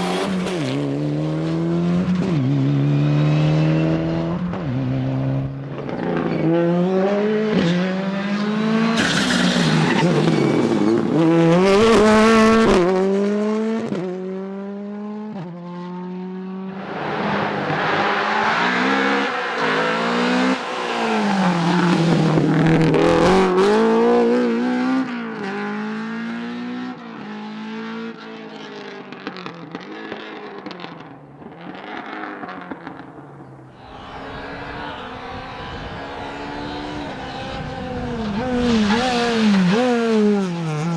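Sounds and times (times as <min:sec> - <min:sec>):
rally car engines at full throttle: 0:00.0 - 0:40.9.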